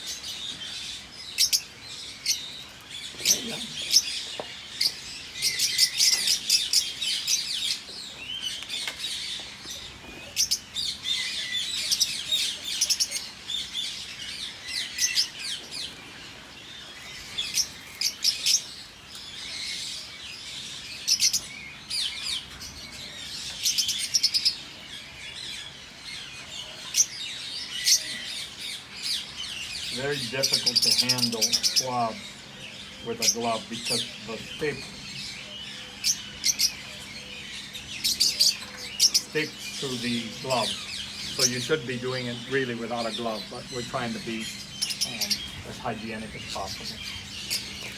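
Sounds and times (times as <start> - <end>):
flock of birds chirping: 0.0 - 47.9.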